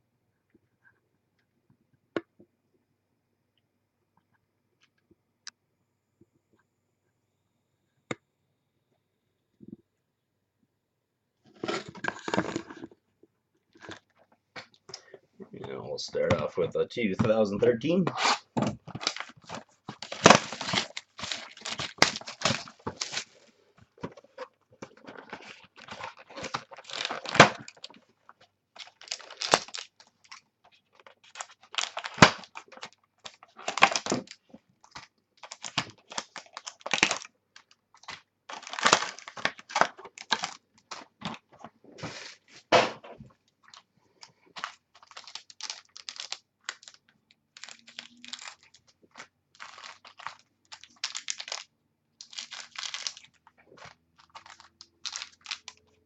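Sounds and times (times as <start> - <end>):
wrapping tearing and crinkling: 18.1 - 28.1, 28.7 - 42.6, 43.6 - 56.0.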